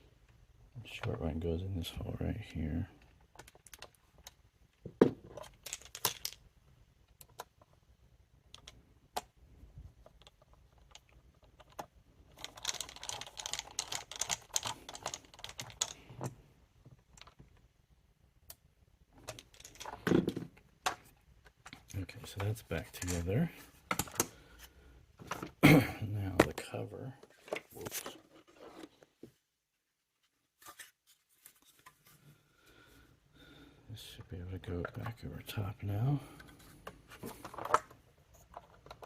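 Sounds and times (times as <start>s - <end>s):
plastic parts clicking: 3.0s - 7.8s, 8.4s - 9.4s, 10.0s - 17.6s, 19.2s - 24.4s, 36.4s - 39.0s.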